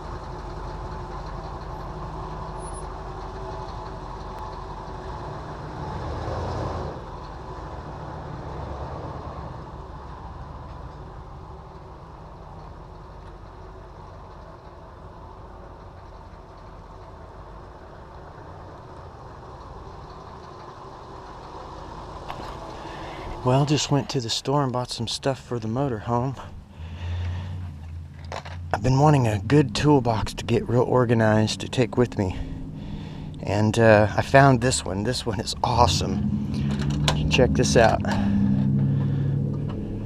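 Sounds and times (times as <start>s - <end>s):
motor hum: 38.0s - 40.0s.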